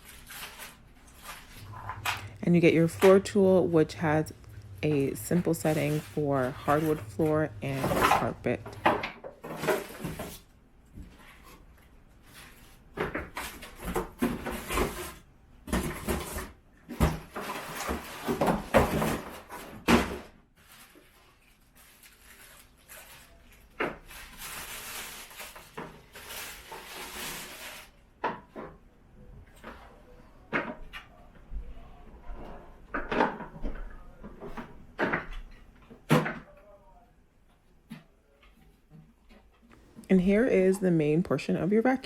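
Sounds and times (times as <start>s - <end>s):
rustling: 0.0s - 3.5s, 20.6s - 28.0s.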